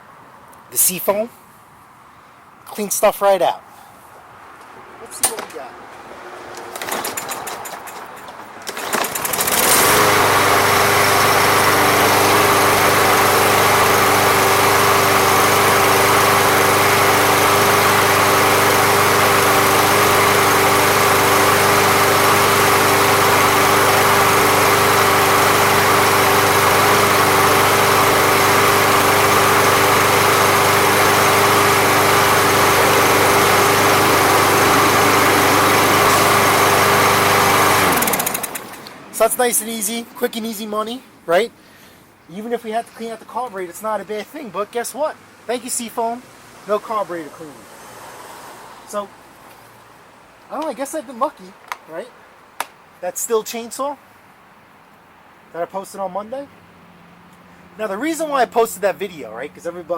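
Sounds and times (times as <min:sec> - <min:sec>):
lawn mower engine pull-started: 0:06.5 - 0:39.4.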